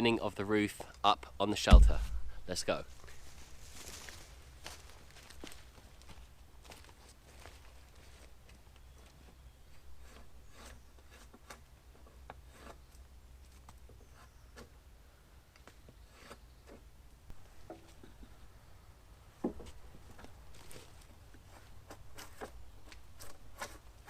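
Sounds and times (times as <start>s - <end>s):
sharp knock: 1.7s - 2.5s
draw knife scraping bark: 10.0s - 11.6s, 12.3s - 12.9s, 16.0s - 16.8s, 23.2s - 23.9s.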